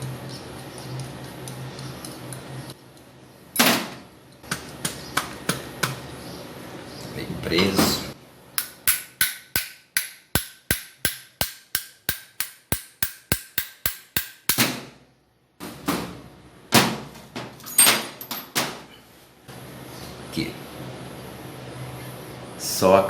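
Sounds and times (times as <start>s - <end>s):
hammer tapping on metal: 8.6s - 14.7s.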